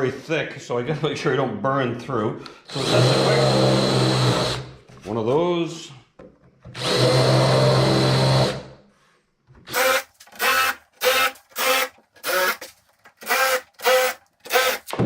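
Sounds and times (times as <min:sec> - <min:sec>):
drill countersinking plywood: 0:02.7 - 0:04.8, 0:06.7 - 0:08.8, 0:09.6 - 0:15.0.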